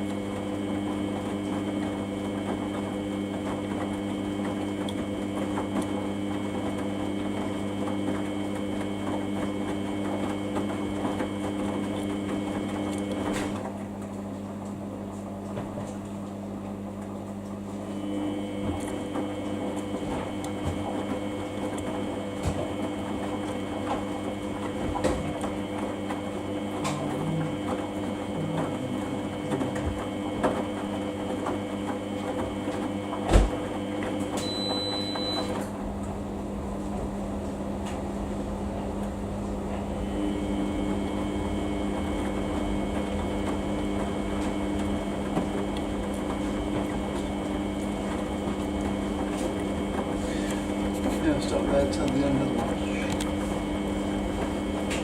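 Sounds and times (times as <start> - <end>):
washing machine motor hum: 0.0 - 55.0
motor whine: 17.4 - 55.0.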